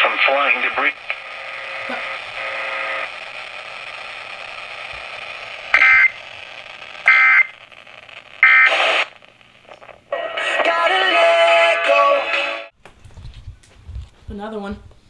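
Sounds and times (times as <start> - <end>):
steady static hiss: 0.0 - 12.8
screeching digital data bursts: 5.7 - 6.2.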